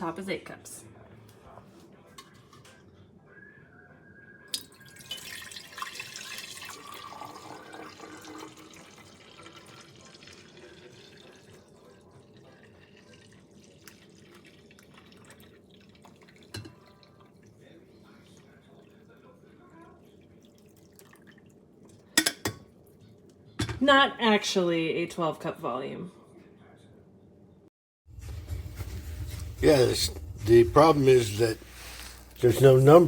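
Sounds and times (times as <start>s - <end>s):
liquid pouring into glass jar: 4.5s - 18.8s, 20.3s - 21.5s
glass clink: 4.6s - 8.7s.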